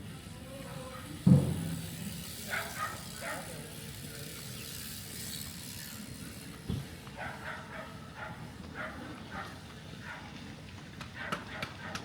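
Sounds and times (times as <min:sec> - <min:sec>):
outdoor background noise: 0:00.0 - 0:12.0
dull thump: 0:01.3 - 0:01.7
dog barking: 0:02.5 - 0:03.5, 0:07.2 - 0:10.2, 0:11.2 - 0:12.0.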